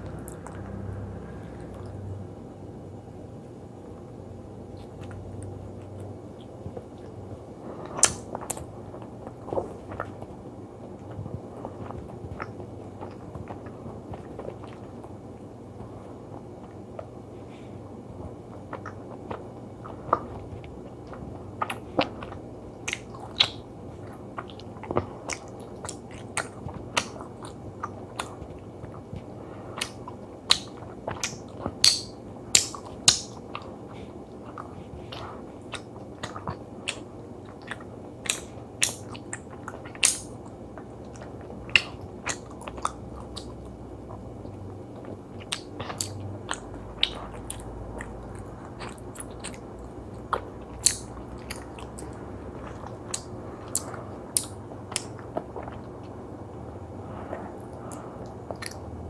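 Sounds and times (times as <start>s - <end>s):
wet chewing mouth clicks: 18.7s - 23.7s, 34.4s - 44.2s, 45.0s - 56.2s, 57.6s - 58.9s.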